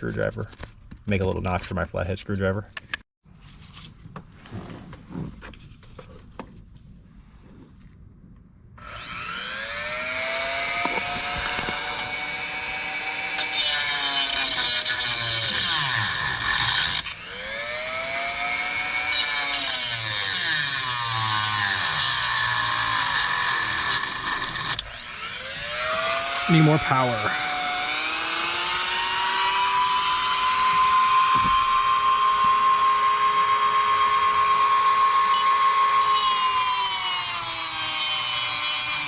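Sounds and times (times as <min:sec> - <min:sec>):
rotary tool whining: 0:08.8 - 0:39.0.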